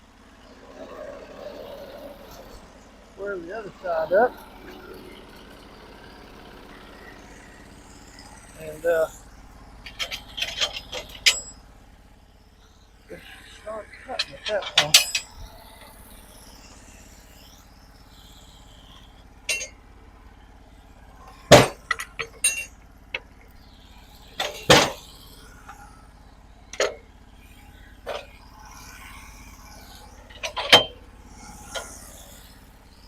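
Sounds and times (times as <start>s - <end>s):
sawmill engine running: 0.0s - 33.0s
log clanks and knocks: 24.4s - 25.0s.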